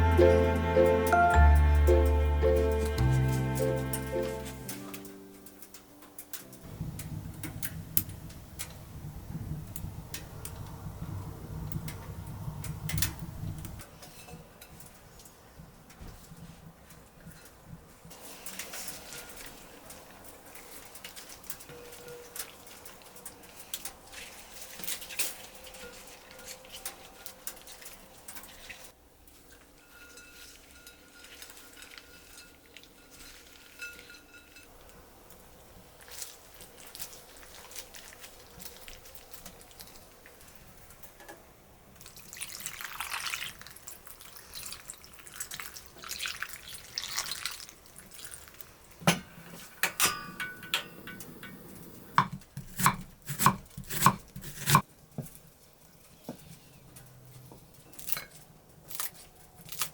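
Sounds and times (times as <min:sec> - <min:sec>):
water running: 0:42.0 - 0:48.7
dishes and utensils clinking: 0:49.1 - 0:52.2.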